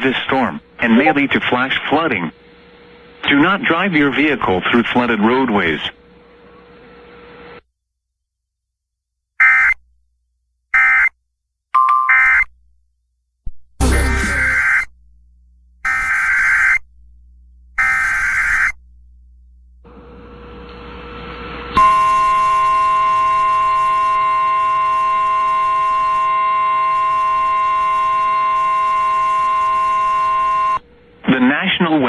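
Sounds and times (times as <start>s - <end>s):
buzzy digital data bursts: 13.8s - 14.9s, 17.7s - 18.8s
steady warning alarm tone: 13.8s - 31.3s.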